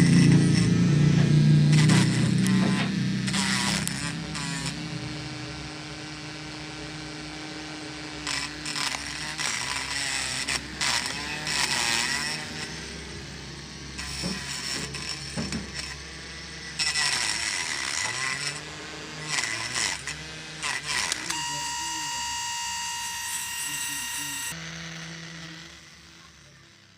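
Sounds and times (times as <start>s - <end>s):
scratchy bursts of blade: 0.0s - 26.9s
small motor whining: 0.0s - 26.9s.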